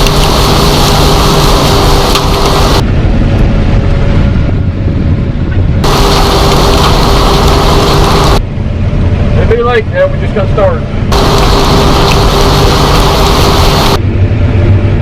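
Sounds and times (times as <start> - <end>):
rushing hiss: 0.0 - 2.8, 5.8 - 8.4, 11.2 - 14.0
farm machinery engine rumble: 0.0 - 15.0.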